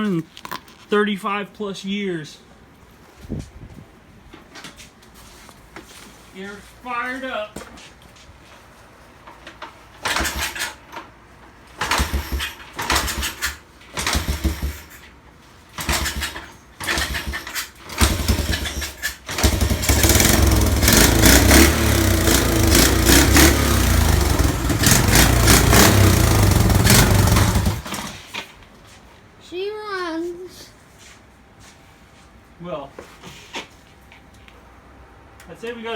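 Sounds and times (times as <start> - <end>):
motorcycle engine starting and running: 10.0 - 10.8, 11.8 - 15.0, 15.7 - 28.4.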